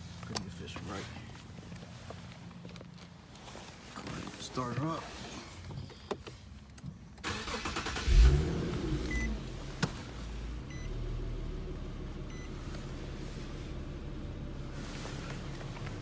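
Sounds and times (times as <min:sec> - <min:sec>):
car engine starting and idling: 0:06.0 - 0:16.0.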